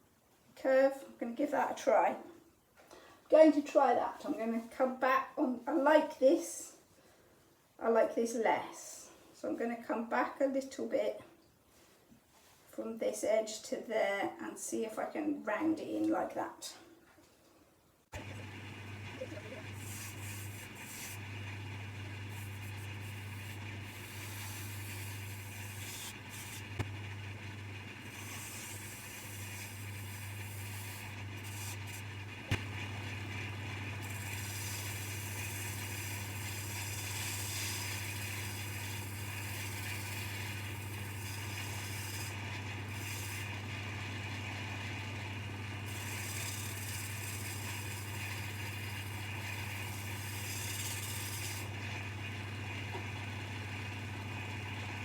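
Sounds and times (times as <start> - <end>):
turning tool scraping wood: 18.2 - 53.2
wood lathe humming: 18.2 - 55.0.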